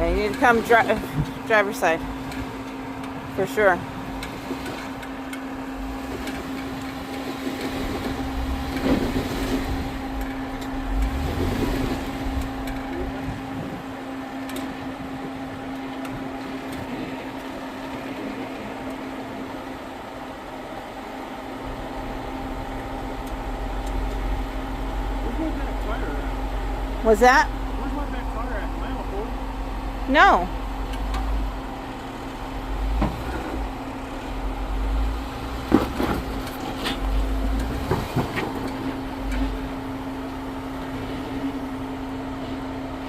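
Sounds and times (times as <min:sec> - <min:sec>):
vehicle engine at low revs: 0:00.0 - 0:43.0.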